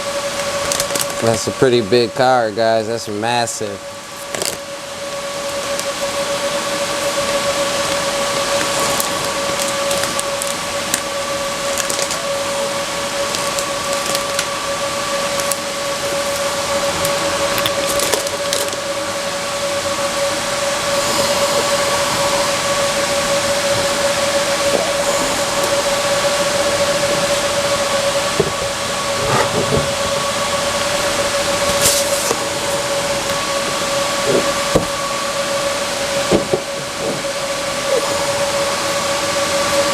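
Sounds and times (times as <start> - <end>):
whirring hum with whine: 0.0 - 39.9
packaging clicks and crackles: 0.6 - 1.4, 4.2 - 4.6, 7.2 - 12.4, 13.2 - 14.6, 15.3 - 15.6, 16.2 - 18.8.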